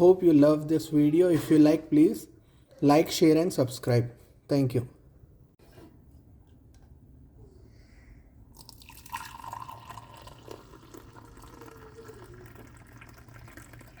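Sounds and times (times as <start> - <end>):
liquid trickling and splashing: 8.6 - 14.0.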